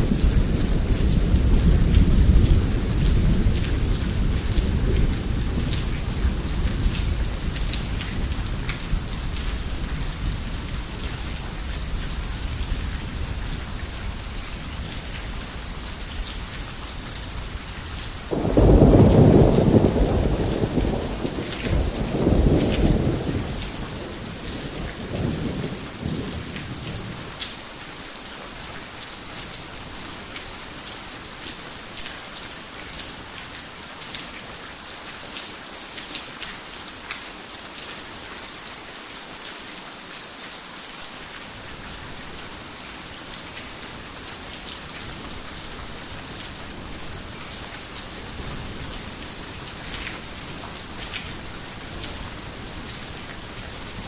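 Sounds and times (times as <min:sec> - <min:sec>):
heavy rain: 0:00.0 - 0:54.0
sharp raindrop impacts: 0:18.2 - 0:23.9
thunder rumble: 0:18.3 - 0:27.0.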